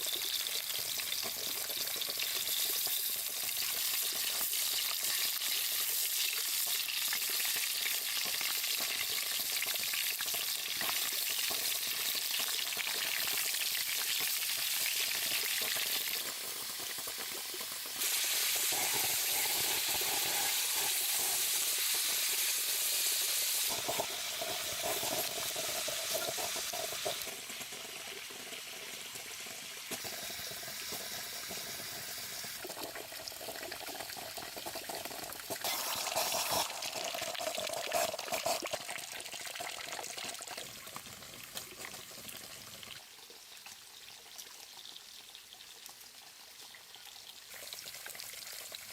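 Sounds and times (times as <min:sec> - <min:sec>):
steady hissing noise: 0:17.9 - 0:32.8.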